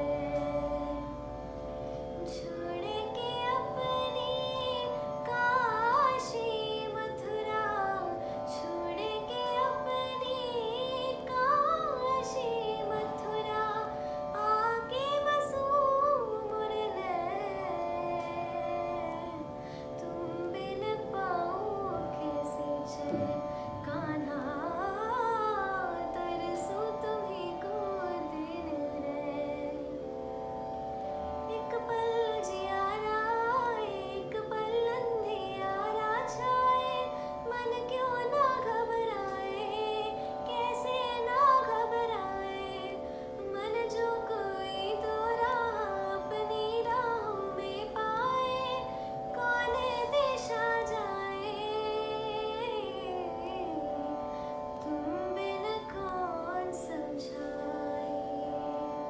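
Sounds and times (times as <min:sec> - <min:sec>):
held drone accompaniment: 0:00.0 - 0:29.8
woman singing devotional song: 0:00.0 - 0:30.8, 0:31.4 - 0:59.0.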